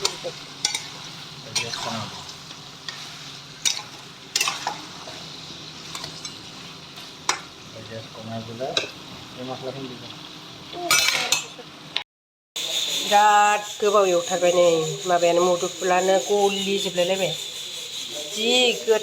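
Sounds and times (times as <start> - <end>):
spatula scraping a pan: 0.0 - 7.5
curry sizzling in a pan: 0.0 - 12.0, 12.6 - 19.0.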